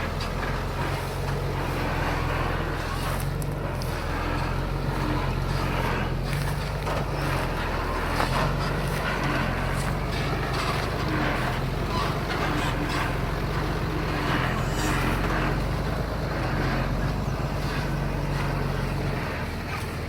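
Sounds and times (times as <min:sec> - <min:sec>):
heavy diesel machine running: 0:00.0 - 0:20.0
irregular clatter: 0:00.0 - 0:20.0.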